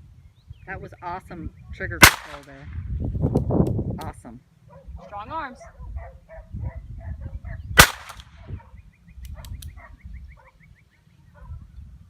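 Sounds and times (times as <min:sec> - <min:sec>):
revolver gunshot: 0:02.0 - 0:02.8, 0:07.8 - 0:08.4.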